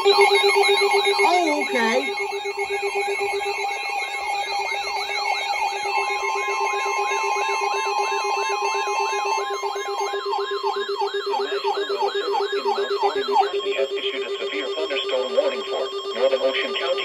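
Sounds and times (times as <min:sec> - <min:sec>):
high warble: 0:00.0 - 0:03.4
emergency alert alarms: 0:00.0 - 0:17.0
siren-like sweeps: 0:00.0 - 0:17.0
steady alarm tone: 0:00.0 - 0:17.0.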